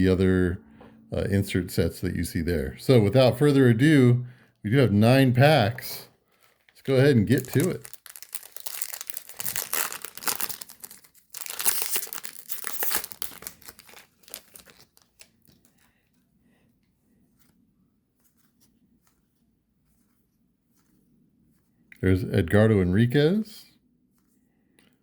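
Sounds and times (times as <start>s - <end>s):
foil wrapper tearing and crinkling: 6.3s - 15.8s.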